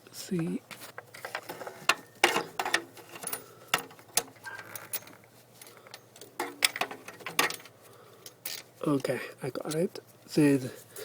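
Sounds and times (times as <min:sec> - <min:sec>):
metal tools knocking: 0:01.4 - 0:07.7.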